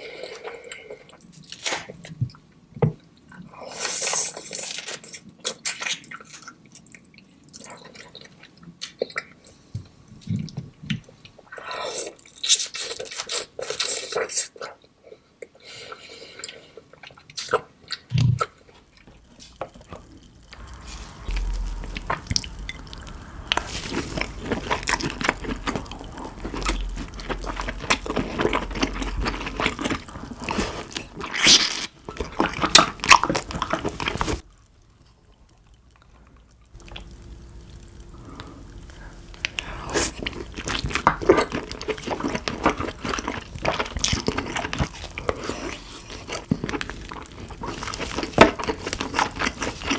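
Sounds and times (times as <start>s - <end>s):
wet chewing with shell crackles: 12.1s - 49.9s.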